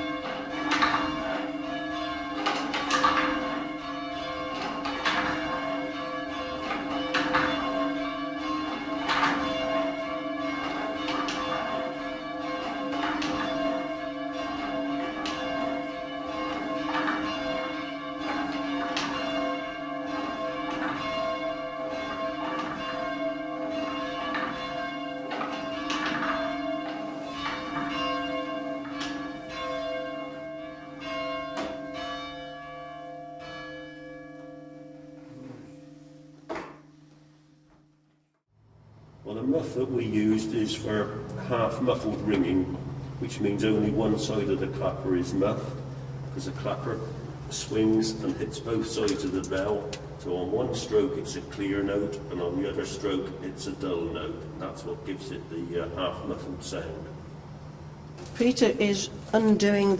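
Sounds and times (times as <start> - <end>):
half-muffled church bells ringing: 0.0 - 37.1, 39.2 - 59.9.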